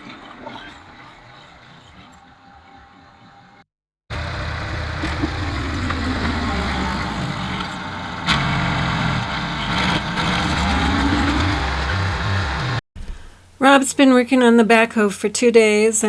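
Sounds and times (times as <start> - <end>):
engine running: 3.1 - 12.8.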